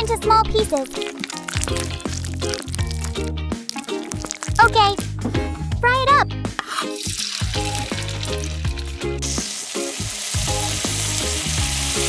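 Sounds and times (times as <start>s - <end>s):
food sizzling in a pan: 0.8s - 4.6s, 6.6s - 12.0s.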